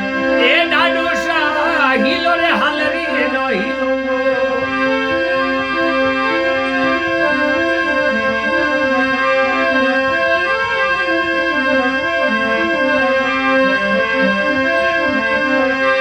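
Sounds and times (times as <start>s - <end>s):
steady held drone: 0.0s - 6.2s
keyboard instrument melody: 0.0s - 13.6s.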